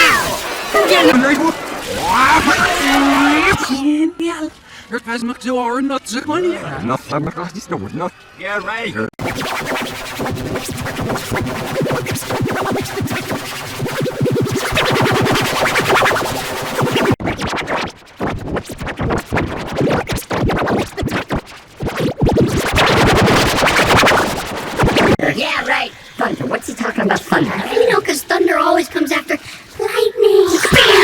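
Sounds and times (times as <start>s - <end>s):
stuttering electronic effect: 0.0s - 3.8s, 9.2s - 25.5s.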